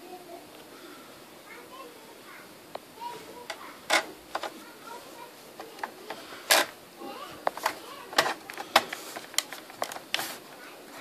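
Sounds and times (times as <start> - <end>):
faint voices: 0.0 - 11.0
clicks and knocks of plastic case: 3.5 - 4.6, 5.6 - 6.7, 7.4 - 10.2.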